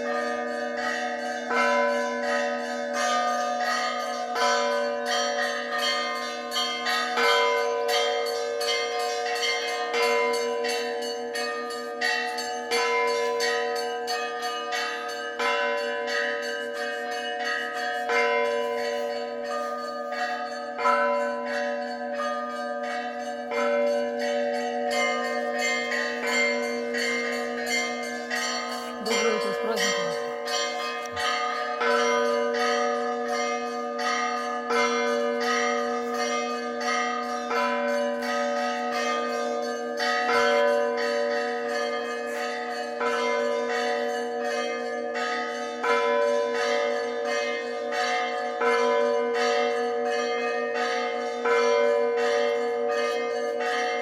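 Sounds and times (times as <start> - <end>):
hum of large bells: 0.0 - 54.0
small bells ringing: 0.0 - 54.0
heavy bell stroke: 8.3 - 31.8.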